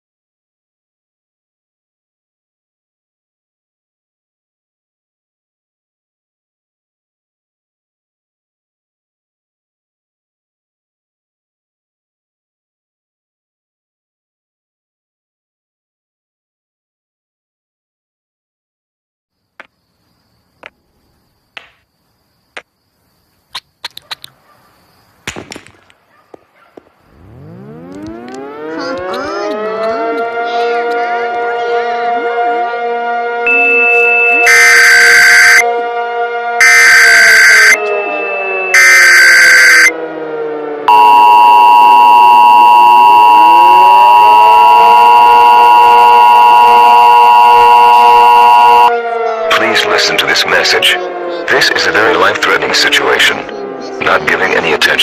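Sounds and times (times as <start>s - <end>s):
two-tone attention signal: 33.5s - 35.6s, 36.6s - 39.9s, 40.9s - 48.9s
digital header bursts: 38.7s - 39.9s
faint high whine: 40.9s - 48.9s.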